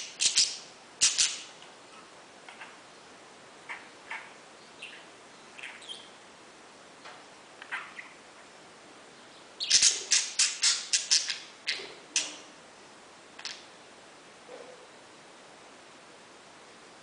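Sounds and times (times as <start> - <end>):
parakeet chirping: 0.0 - 1.5, 3.6 - 6.2, 7.6 - 8.2, 9.3 - 12.5.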